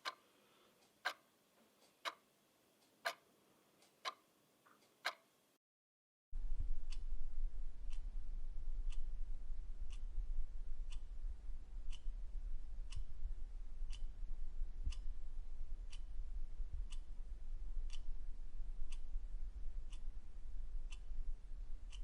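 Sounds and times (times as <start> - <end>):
clock ticking: 0.0 - 0.2, 0.8 - 5.3, 12.9 - 13.2, 14.8 - 15.2, 15.8 - 17.2, 17.9 - 18.2, 18.8 - 22.0
steady low hum: 6.4 - 22.0.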